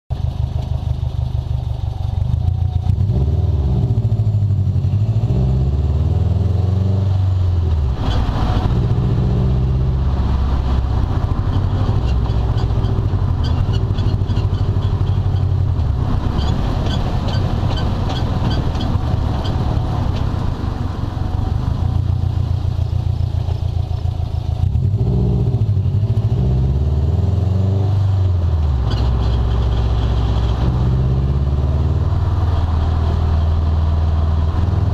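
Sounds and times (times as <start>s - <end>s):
car engine running while driving: 0.1s - 34.9s
high-pitched drivetrain squeak: 11.4s - 19.8s, 28.8s - 30.6s.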